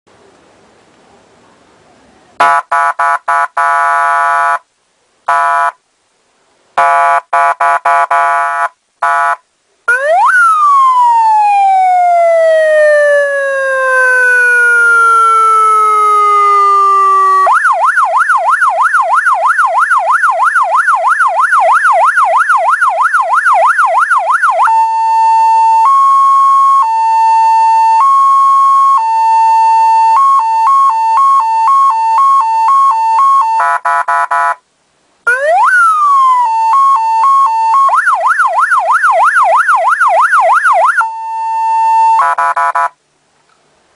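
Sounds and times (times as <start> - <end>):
two-tone high-low siren: 6.8 - 34.6, 35.3 - 43.0
fast yelp siren: 9.0 - 34.6, 35.3 - 42.9
wailing siren: 9.9 - 33.8, 35.3 - 42.9.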